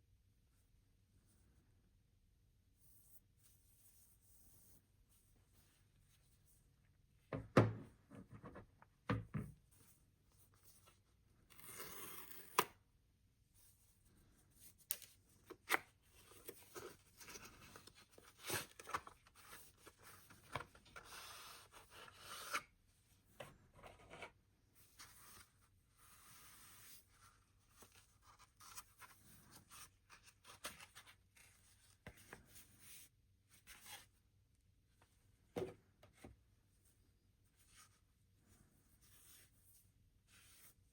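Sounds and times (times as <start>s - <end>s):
hands handling phone packaging: 14.7s - 22.5s.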